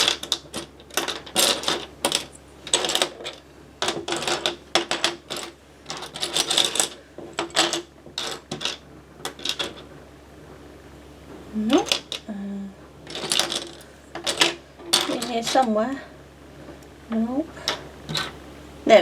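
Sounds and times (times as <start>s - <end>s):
plastic bricks clicking and clattering: 0.0s - 9.9s, 11.7s - 12.3s, 13.0s - 15.7s, 17.6s - 18.4s.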